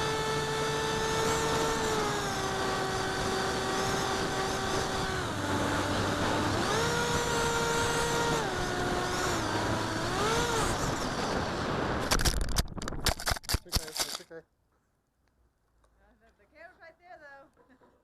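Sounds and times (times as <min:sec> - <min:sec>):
electric motor and propeller whining: 0:00.0 - 0:13.2.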